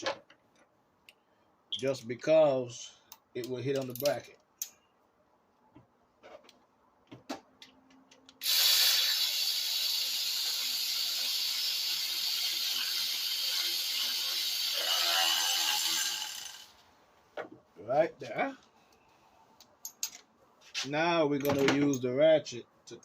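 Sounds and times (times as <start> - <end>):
power ratchet clicks: 8.4 - 16.7
power ratchet whirring: 8.4 - 16.8.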